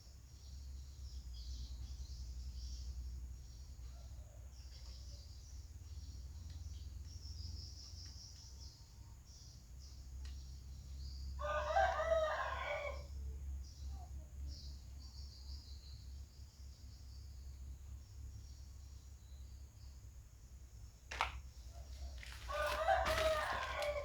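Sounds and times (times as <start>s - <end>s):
rooster crowing: 11.4s - 13.1s, 22.0s - 24.0s
insects chirring: 13.6s - 24.0s.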